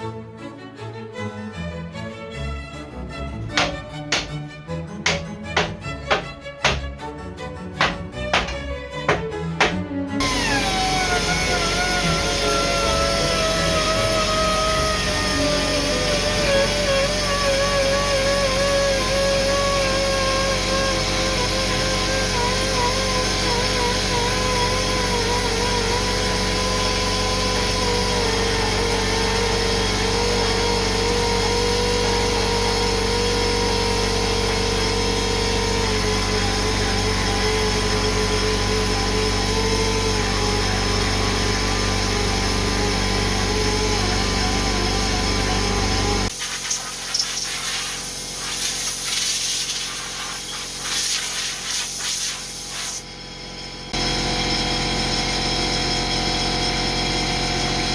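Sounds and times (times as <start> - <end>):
power tool motor whining: 10.2 - 53.1.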